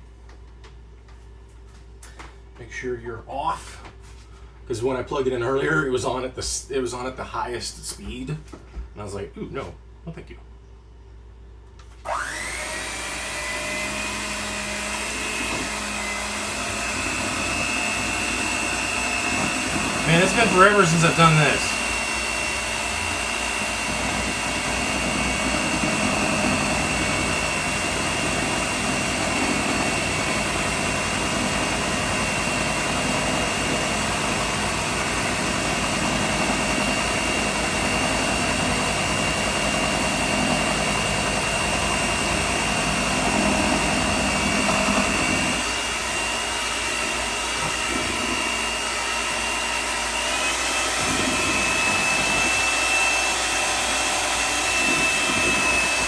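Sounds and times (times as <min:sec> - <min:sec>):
electric hand mixer whining: 0:12.0 - 0:56.0.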